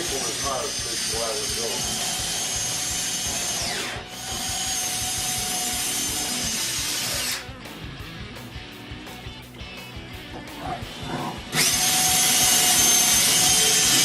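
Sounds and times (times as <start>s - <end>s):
power drill boring into wood: 0.0s - 7.5s, 11.0s - 14.0s.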